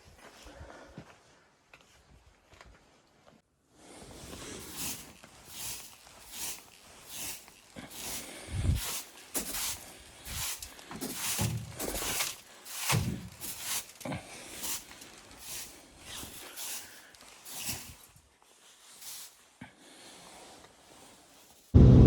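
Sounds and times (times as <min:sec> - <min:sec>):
footsteps crunching through snow: 0:04.0 - 0:19.4
loud steady droning: 0:21.8 - 0:22.0.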